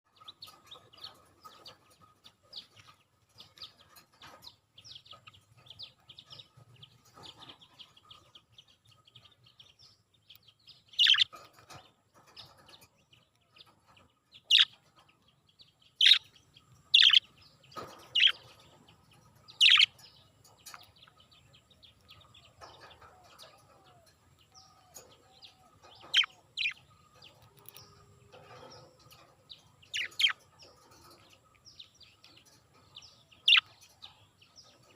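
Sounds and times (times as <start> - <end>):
budgerigars chirping: 10.7 - 11.7, 14.4 - 14.8, 15.8 - 34.9
loud sharp bird calls: 19.5 - 20.0.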